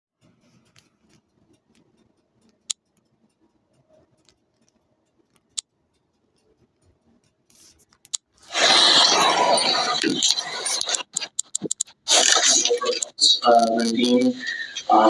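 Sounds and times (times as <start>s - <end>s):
small ticks: 0.2s - 8.5s
sharp clicks: 0.7s - 14.8s.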